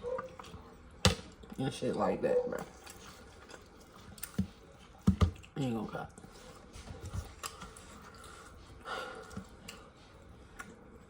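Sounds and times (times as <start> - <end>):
small clicks while eating: 2.7 - 6.3, 10.5 - 10.8
person chewing: 2.8 - 5.5, 7.3 - 11.0.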